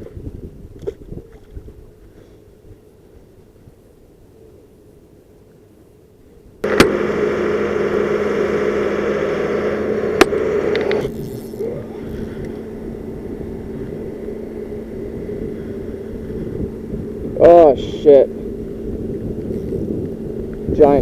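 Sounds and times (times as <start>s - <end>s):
boat motor humming: 6.6s - 21.0s.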